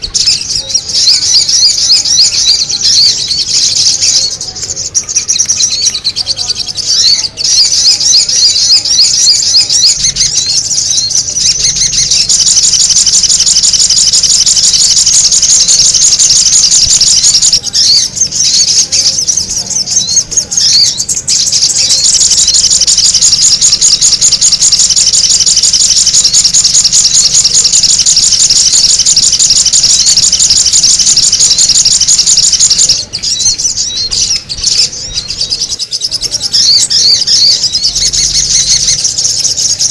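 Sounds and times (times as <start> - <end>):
rapid high bird chirps: 0.0 - 39.9.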